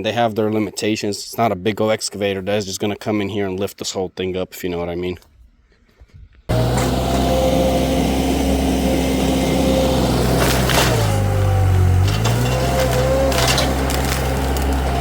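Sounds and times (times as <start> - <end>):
engine running under load: 6.5 - 15.0
sharp cracks: 12.1 - 15.0.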